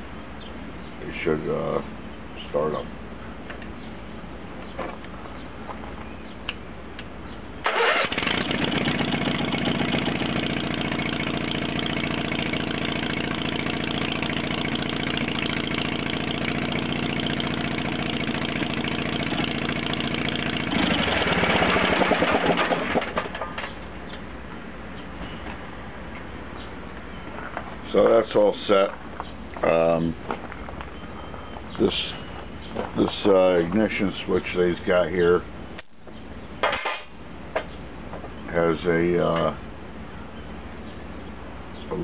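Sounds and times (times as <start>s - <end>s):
garden tractor engine running: 7.6s - 24.2s.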